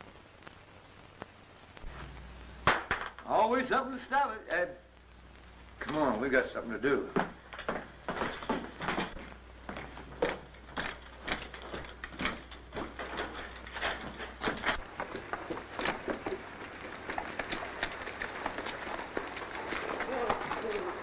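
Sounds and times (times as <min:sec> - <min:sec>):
irregular knocks and clatter: 0:02.7 - 0:03.3, 0:07.1 - 0:21.0.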